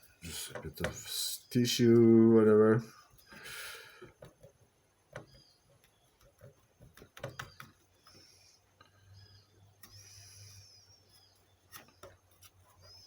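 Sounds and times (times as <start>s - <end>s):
faint clicks and taps: 4.0s - 9.0s.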